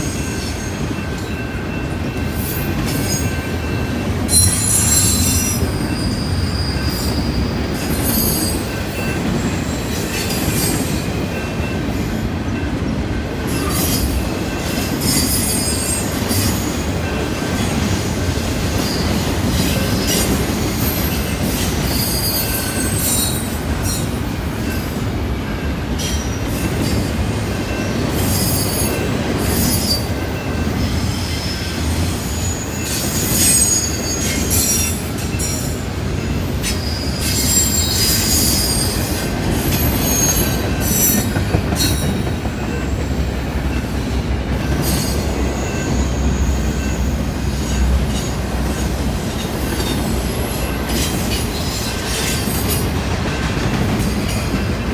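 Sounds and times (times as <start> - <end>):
train wheels rumbling on rail: 0.0 - 54.9
high-pitched wheel squeals: 4.3 - 10.0, 20.9 - 23.5, 28.3 - 35.6, 36.6 - 42.1.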